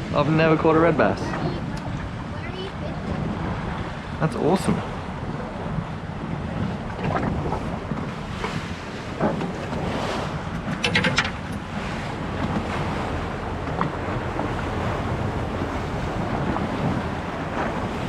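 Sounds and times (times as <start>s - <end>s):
sea around boat: 0.0s - 18.0s
wind buffeting microphone: 0.0s - 18.0s.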